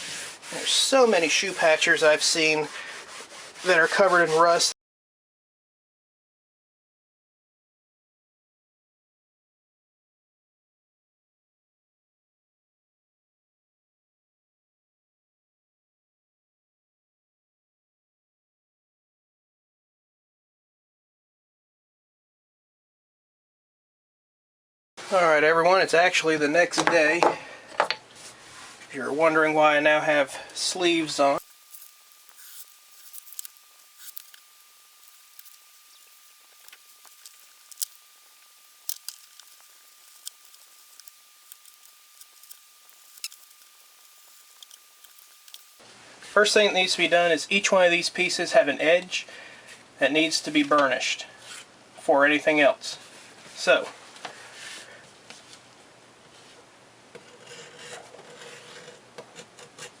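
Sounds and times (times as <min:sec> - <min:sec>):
wax scraping on leather: 0:00.0 - 0:04.6.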